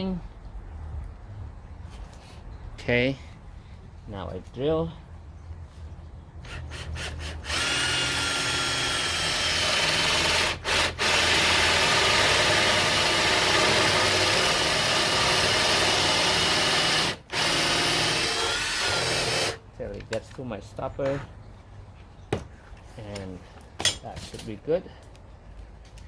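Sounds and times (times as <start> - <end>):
power drill boring into wood: 6.4 - 19.6.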